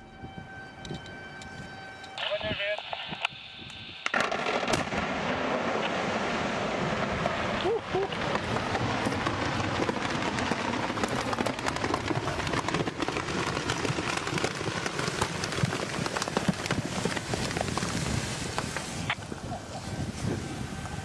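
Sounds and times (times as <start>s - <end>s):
rock debris raining down: 5.1s - 19.0s.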